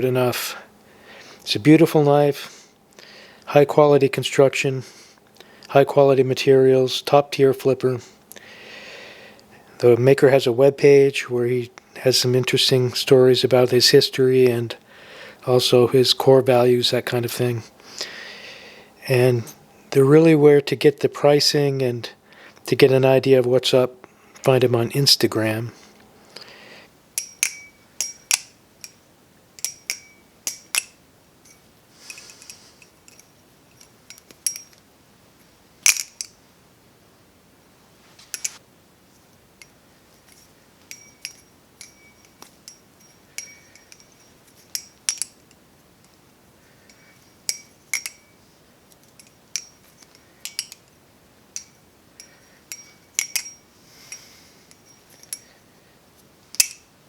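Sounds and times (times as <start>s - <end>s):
balisong knife clacking and clinking: 27.2s - 29.0s, 29.6s - 34.8s, 35.8s - 36.4s, 38.3s - 38.6s, 39.6s - 46.2s, 46.8s - 55.5s, 56.5s - 56.9s.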